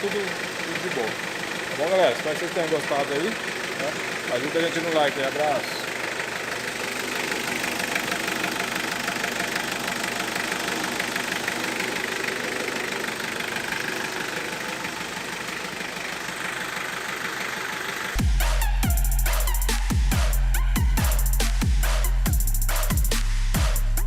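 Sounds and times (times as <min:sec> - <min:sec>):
pickup engine idling: 0:00.0 - 0:24.0
loud electronic music: 0:18.2 - 0:24.0.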